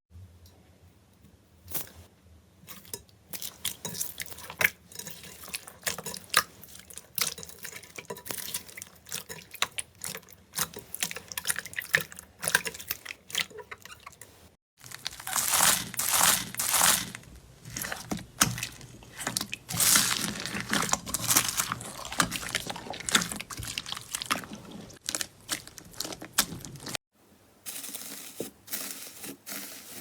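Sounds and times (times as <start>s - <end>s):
slime squishing with sticky pops: 14.8s - 27.0s.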